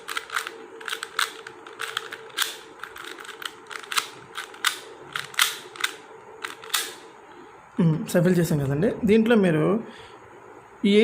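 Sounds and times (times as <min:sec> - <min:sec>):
puzzle cube plastic clicks: 0:00.0 - 0:07.0.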